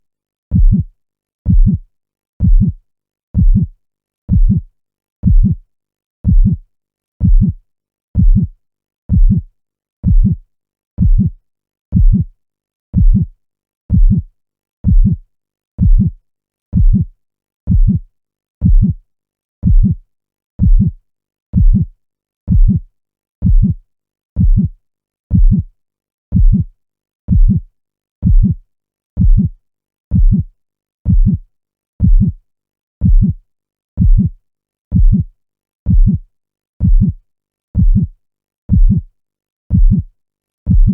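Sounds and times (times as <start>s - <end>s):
heartbeat thumps: 0.5s - 0.9s, 1.5s - 1.8s, 2.4s - 2.8s, 3.4s - 3.7s, 4.3s - 4.6s, 5.2s - 5.6s, 6.2s - 6.6s, 7.2s - 7.6s, 8.2s - 8.5s, 9.1s - 9.4s, 10.0s - 10.4s, 11.0s - 11.4s, 12.0s - 12.3s, 13.0s - 13.3s, 13.9s - 14.2s, 14.8s - 15.2s, 15.8s - 16.2s, 16.8s - 17.1s, 17.7s - 18.0s, 18.6s - 19.0s, 19.6s - 20.0s, 20.6s - 21.0s, 21.6s - 21.9s, 22.5s - 22.8s, 23.4s - 23.8s, 24.4s - 24.7s, 25.3s - 25.6s, 26.3s - 26.7s, 27.3s - 27.6s, 28.2s - 28.6s, 29.2s - 29.5s, 30.1s - 30.5s, 31.1s - 31.4s, 32.0s - 32.4s, 33.0s - 33.4s, 34.0s - 34.3s, 34.9s - 35.3s, 35.9s - 36.2s, 36.8s - 37.2s, 37.8s - 38.1s, 38.7s - 39.0s, 39.7s - 40.0s, 40.7s - 40.9s.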